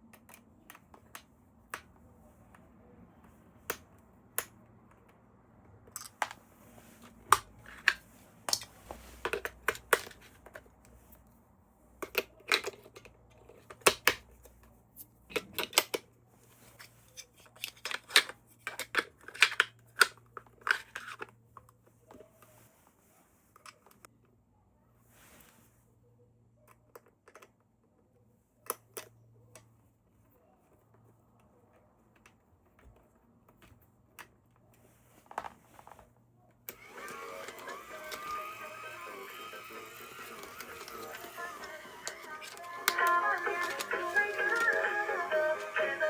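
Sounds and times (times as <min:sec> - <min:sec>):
packaging clicks and taps: 0:36.7 - 0:46.0.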